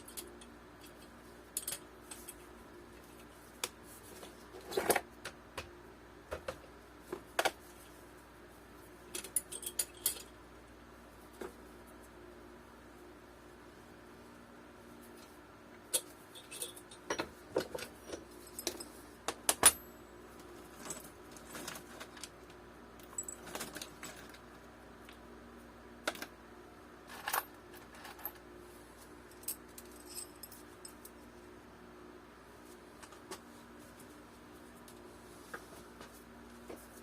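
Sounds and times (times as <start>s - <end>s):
metal nuts and washers clinking: 0.0s - 2.5s, 9.1s - 10.4s, 15.8s - 19.0s, 29.2s - 31.2s.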